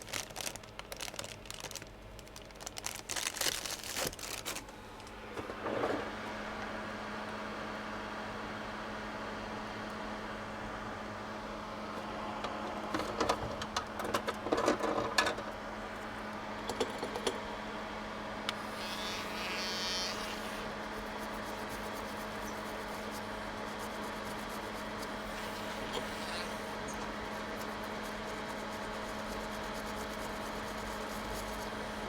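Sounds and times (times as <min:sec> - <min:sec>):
steady buzzing hum: 0:09.6 - 0:32.0.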